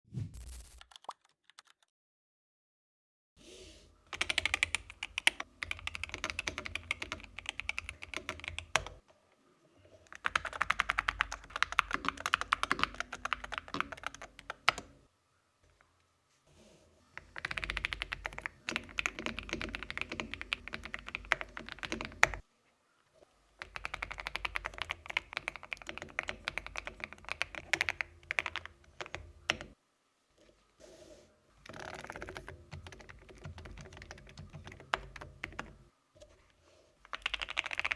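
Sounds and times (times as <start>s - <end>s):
fast typing on mechanical keyboard: 0.8s - 1.8s, 4.1s - 9.0s, 10.1s - 15.0s, 17.2s - 22.4s, 23.6s - 29.8s, 31.7s - 35.8s, 37.1s - 37.9s.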